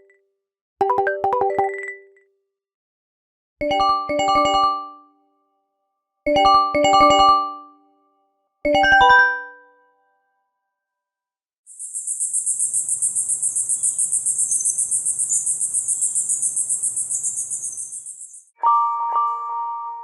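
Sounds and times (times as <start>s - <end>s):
chirring cricket-like trill: 11.7s - 18.6s
chime-like mallet notes: 18.6s - 20.0s.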